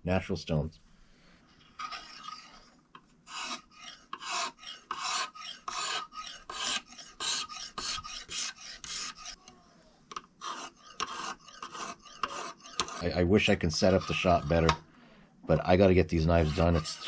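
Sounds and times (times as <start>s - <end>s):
knife scraping on whetstone: 1.7s - 9.4s, 10.2s - 14.7s, 16.2s - 17.0s.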